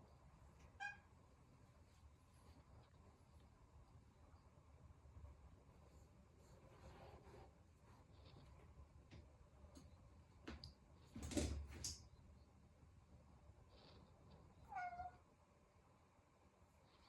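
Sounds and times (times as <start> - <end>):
cat meowing: 0.8 - 1.1, 14.7 - 15.2.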